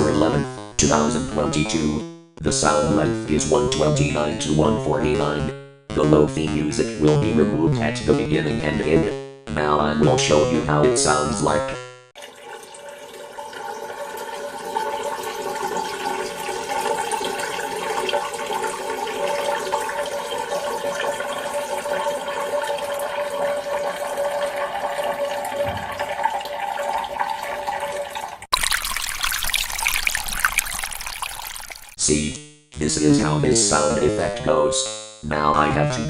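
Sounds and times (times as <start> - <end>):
urine splashing into toilet water: 12.2 - 32.0.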